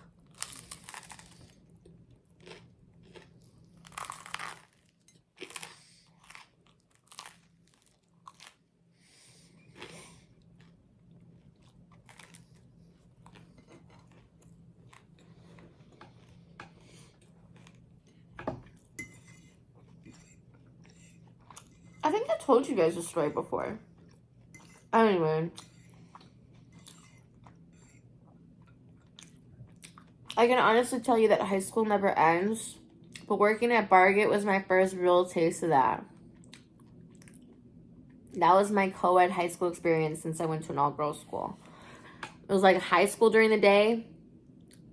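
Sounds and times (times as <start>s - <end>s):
chewing crunchy bread: 0.0s - 22.0s, 23.8s - 24.9s, 25.5s - 30.4s, 36.1s - 38.4s.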